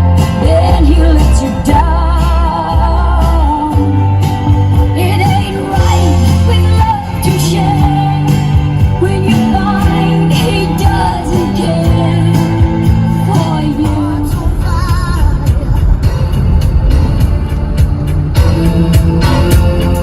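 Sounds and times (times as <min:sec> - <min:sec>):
held bass notes: 0:00.0 - 0:20.0
song with singing voice: 0:00.0 - 0:20.0.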